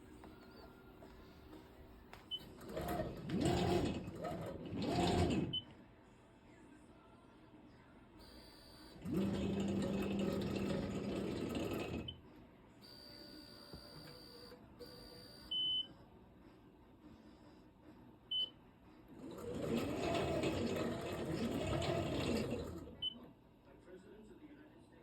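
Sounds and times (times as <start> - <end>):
stepper motors whining: 2.6 - 5.6, 9.0 - 12.1, 19.2 - 23.0.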